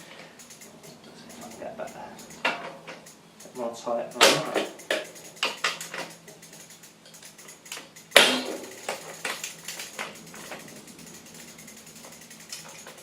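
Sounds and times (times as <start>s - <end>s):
socket ratchet clicking: 0.0s - 13.0s
loud metal clack: 4.1s - 6.1s, 7.7s - 10.7s.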